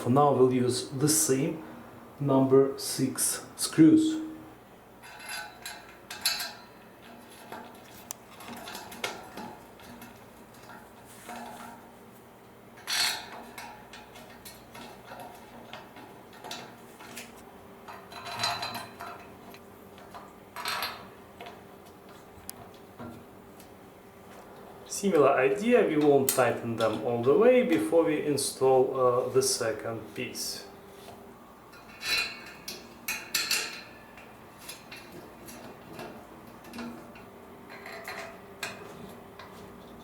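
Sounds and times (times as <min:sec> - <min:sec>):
metal clinks and scrapes: 0:05.0 - 0:11.9, 0:12.8 - 0:19.5, 0:31.7 - 0:40.0.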